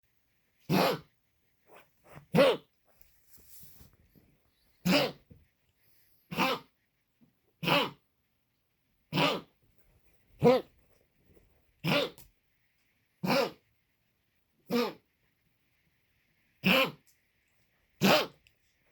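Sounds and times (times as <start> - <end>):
pet animal coughing: 0.6 - 1.1, 2.3 - 2.7, 4.8 - 5.4, 6.3 - 6.8, 7.6 - 8.0, 9.1 - 9.6, 11.8 - 12.3, 13.2 - 13.6, 14.7 - 15.0, 16.6 - 17.0, 18.0 - 18.4.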